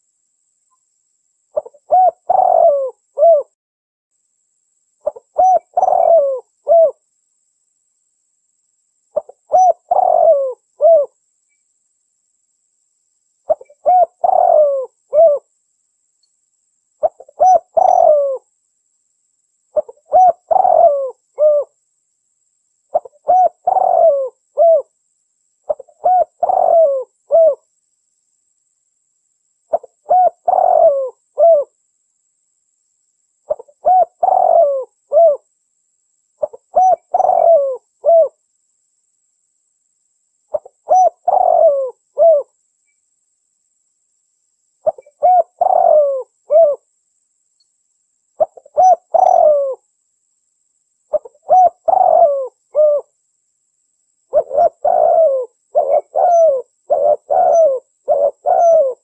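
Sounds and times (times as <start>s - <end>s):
dove cooing: 1.6s - 3.6s, 5.0s - 7.0s, 9.2s - 11.2s, 13.5s - 15.5s, 17.0s - 18.5s, 19.8s - 21.8s, 22.9s - 24.9s, 25.7s - 27.6s, 29.7s - 31.8s, 33.5s - 35.4s, 36.4s - 38.4s, 40.5s - 42.5s, 44.8s - 46.8s, 48.4s - 49.8s, 51.1s - 53.1s, 54.3s - 59.0s.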